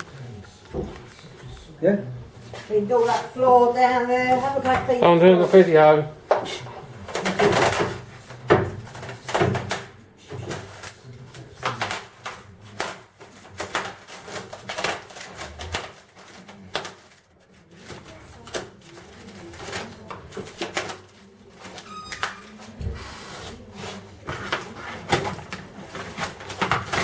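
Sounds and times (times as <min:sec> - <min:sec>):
packaging rustling and knocking: 0:24.3 - 0:27.0.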